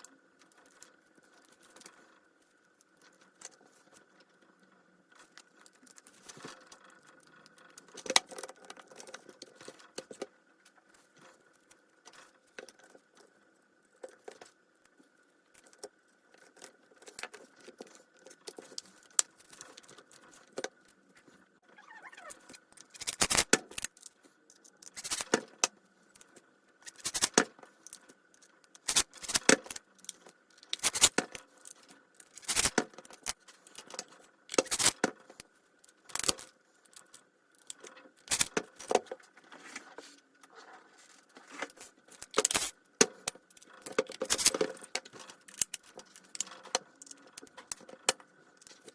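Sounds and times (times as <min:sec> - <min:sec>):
metal tool parts clicking and scraping: 0:21.8 - 0:25.6, 0:26.2 - 0:35.4, 0:36.1 - 0:39.0, 0:41.5 - 0:48.9.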